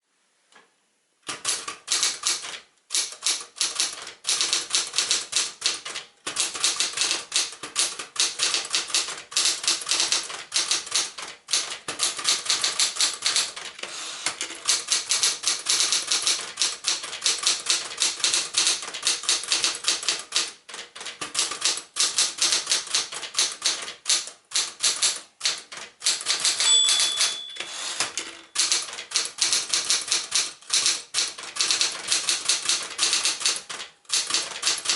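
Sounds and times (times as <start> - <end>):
typewriter keys clacking: 1.3 - 34.9
typewriter bell ringing: 26.4 - 28.8.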